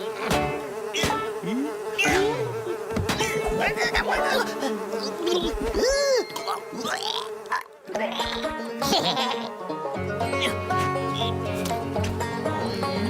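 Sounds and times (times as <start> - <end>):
steady buzz: 0.0 - 7.6.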